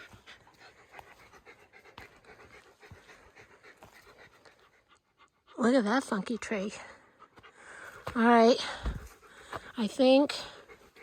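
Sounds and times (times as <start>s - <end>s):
footsteps on trail: 0.0s - 4.9s, 6.4s - 10.9s
person breathing: 6.8s - 9.8s.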